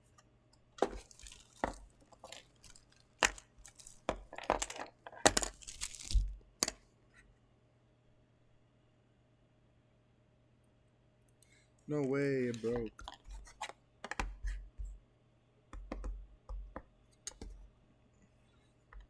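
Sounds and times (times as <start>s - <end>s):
plastic packaging rustling: 0.8s - 6.4s.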